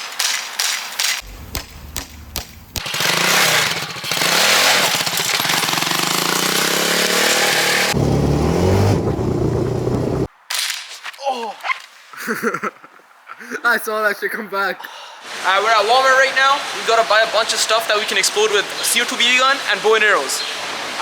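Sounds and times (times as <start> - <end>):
sharp clicks: 0.2 - 2.9
atv engine revving: 1.2 - 10.3
wind rush on microphone: 8.0 - 10.3.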